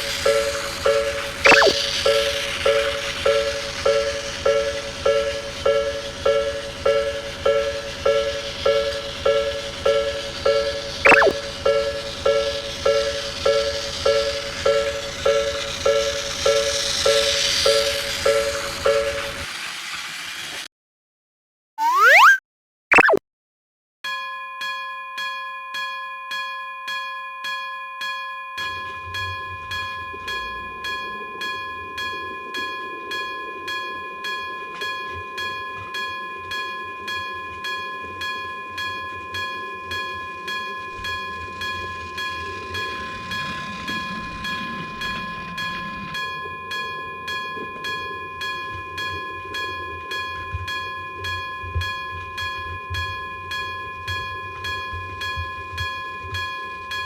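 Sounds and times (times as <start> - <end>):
railroad crossing alarm ringing: 0.0 - 19.5, 28.4 - 57.0
passing train rumble: 0.0 - 20.6, 28.8 - 57.0.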